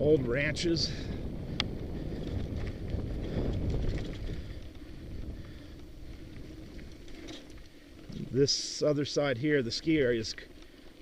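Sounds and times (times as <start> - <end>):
wind buffeting microphone: 0.0 - 8.5
bike tyres rumbling on dirt: 0.0 - 11.0.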